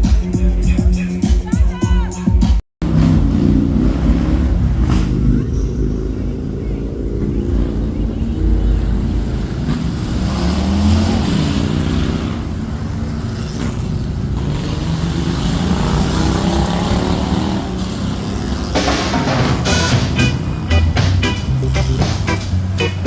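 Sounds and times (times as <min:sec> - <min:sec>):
vehicle engines revving: 0:02.8 - 0:23.0
sharp noisy sound: 0:13.4 - 0:22.8.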